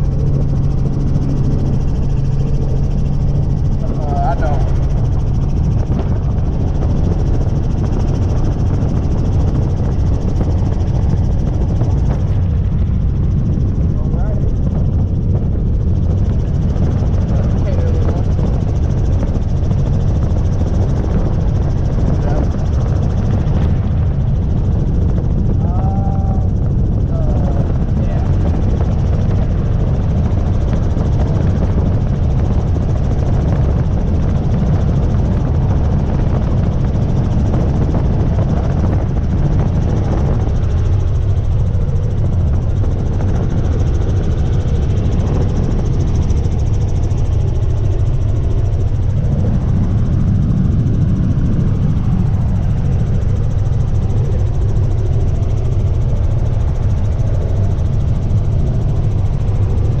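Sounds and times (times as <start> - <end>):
helicopter rotor rumble: 0.0 - 60.0.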